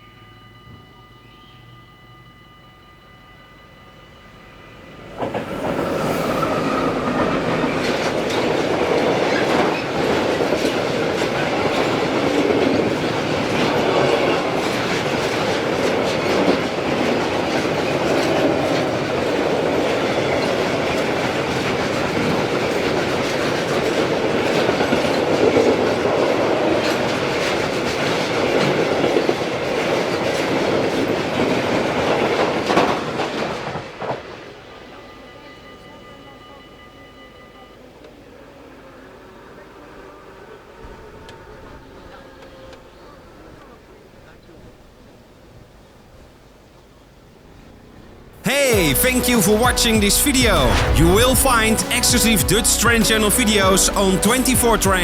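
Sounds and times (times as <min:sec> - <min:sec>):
train wheels clattering over rails: 0:05.1 - 0:34.4.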